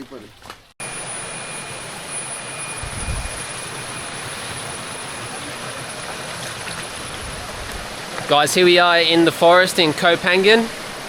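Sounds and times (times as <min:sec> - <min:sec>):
thin high whine: 0:00.8 - 0:09.3
steady rushing noise: 0:00.9 - 0:11.0.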